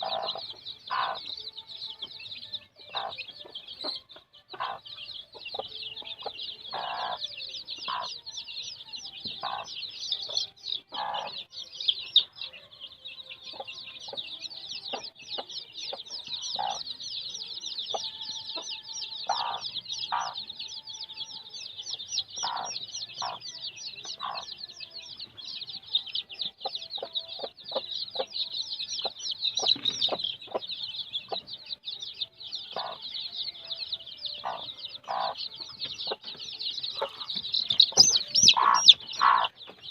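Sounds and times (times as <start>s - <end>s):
hen clucking: 0.0s - 1.3s, 2.9s - 8.2s, 9.3s - 11.5s, 14.9s - 16.8s, 17.9s - 20.5s, 22.2s - 24.6s, 26.6s - 28.4s, 29.0s - 31.6s, 32.7s - 33.2s, 34.4s - 39.9s
chicks peeping: 0.0s - 39.9s.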